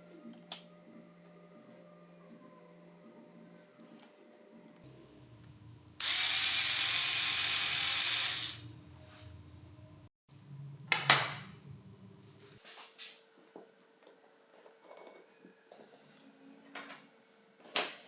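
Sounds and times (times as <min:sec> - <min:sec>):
cordless screwdriver motor running: 0:06.0 - 0:08.6.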